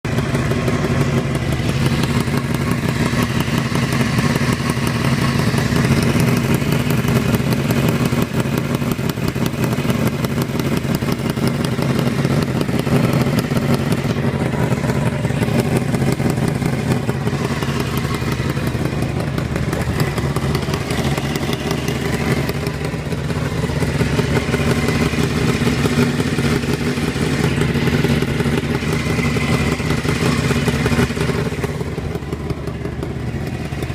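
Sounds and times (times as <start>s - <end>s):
motorcycle engine running: 0.0s - 33.9s
fast ticking clatter: 0.1s - 33.9s.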